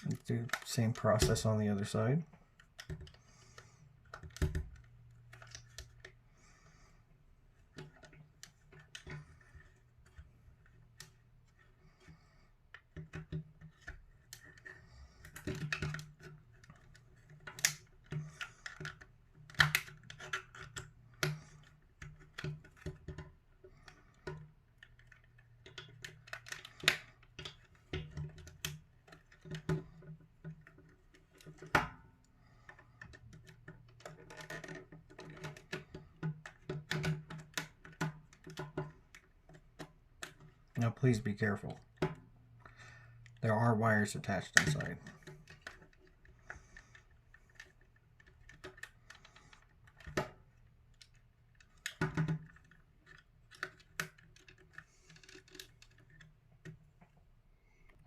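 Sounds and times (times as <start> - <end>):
plastic clicks and snaps: 7.7 - 40.8.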